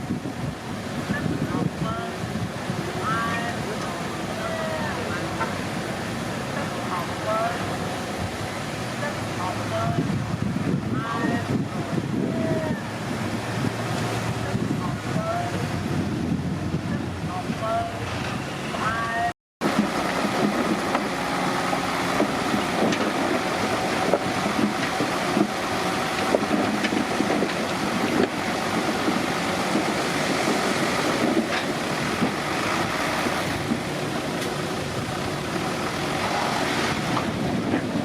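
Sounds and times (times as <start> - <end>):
bulldozer diesel engine running: 0.0 - 38.0
knocks and clanks of tracks: 1.7 - 10.3, 19.6 - 38.0.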